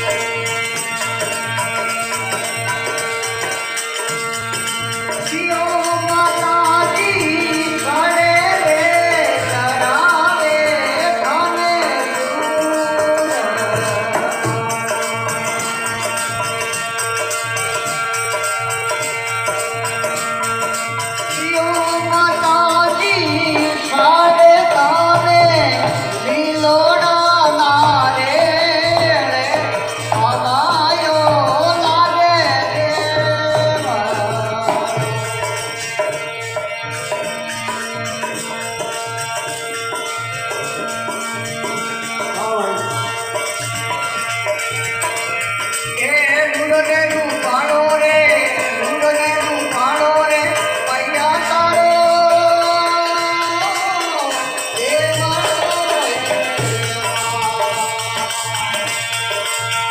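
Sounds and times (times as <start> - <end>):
tabla and rattling percussion: 0.0 - 59.9
person singing: 5.3 - 15.3, 21.4 - 35.5, 42.2 - 43.2, 46.0 - 58.7.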